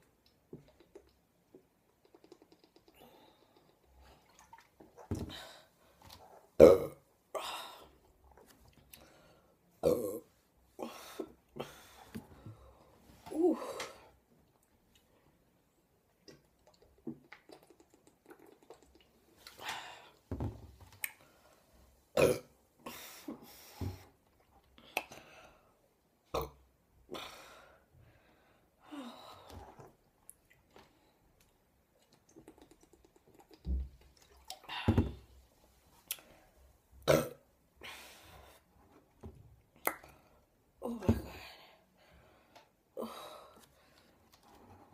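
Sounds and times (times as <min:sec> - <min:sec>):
woman burping: 0:06.6 - 0:07.5, 0:09.8 - 0:10.2, 0:22.2 - 0:22.5, 0:37.0 - 0:37.4.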